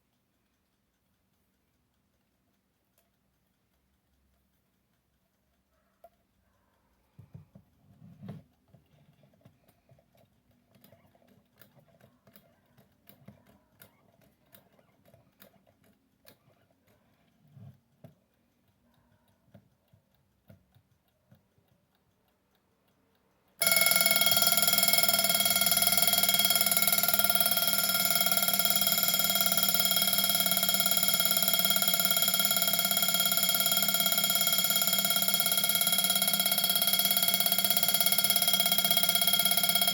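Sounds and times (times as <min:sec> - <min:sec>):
alarm clock ticking: 0:00.0 - 0:39.9
alarm clock ringing: 0:23.6 - 0:39.9.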